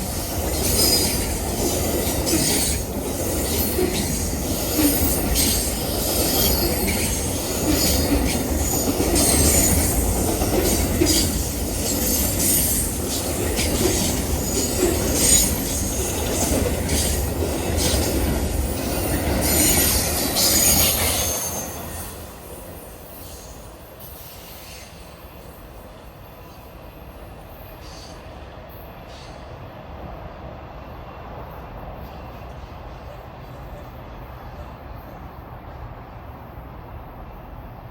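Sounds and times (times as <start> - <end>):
train wheels rattling on rails: 0.0 - 36.0
high wheel squeal: 18.7 - 22.3.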